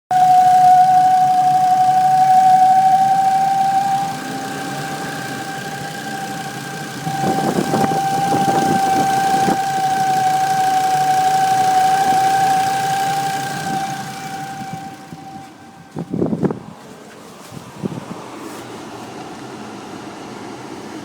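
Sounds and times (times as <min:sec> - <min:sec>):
steady high whistle: 0:00.1 - 0:16.7
car engine idling: 0:00.1 - 0:21.0.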